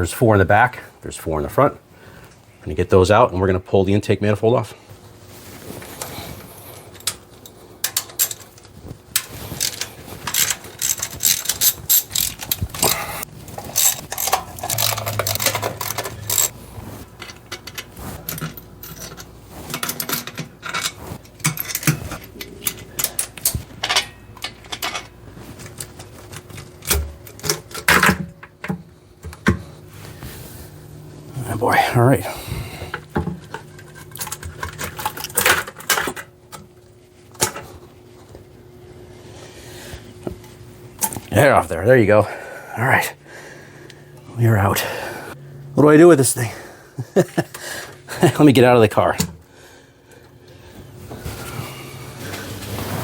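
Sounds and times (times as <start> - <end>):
ratchet clicking: 9.6 - 13.0, 13.7 - 16.5.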